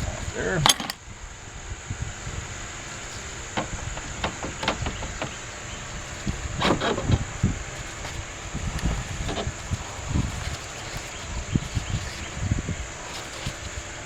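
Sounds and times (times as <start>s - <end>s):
insects chirring: 0.0s - 14.0s
metal clatter: 0.6s - 1.0s
metal clicks and knocks: 0.6s - 1.0s, 3.5s - 9.6s.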